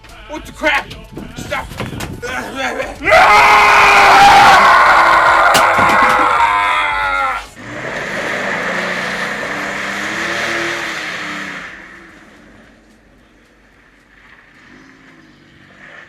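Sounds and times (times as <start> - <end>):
tires squealing: 1.4 - 16.0
engine revving: 7.4 - 16.0.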